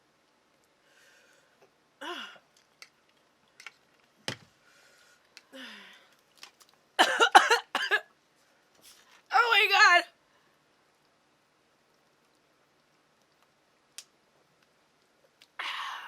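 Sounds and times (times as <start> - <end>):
woman groaning and sighing: 2.0 - 2.4, 5.5 - 6.0, 15.6 - 16.0.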